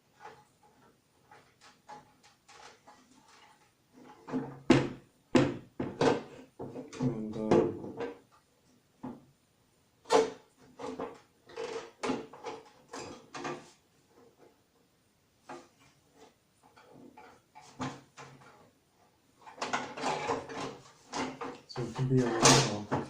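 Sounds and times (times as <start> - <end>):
plastic cover knocks and scrapes: 1.4 - 8.2.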